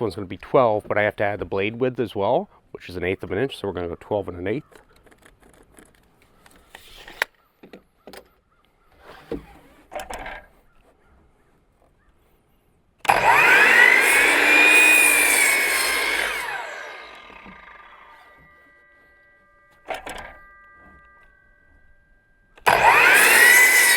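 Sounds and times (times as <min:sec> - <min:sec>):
electric saw cutting wood: 0:13.0 - 0:23.9.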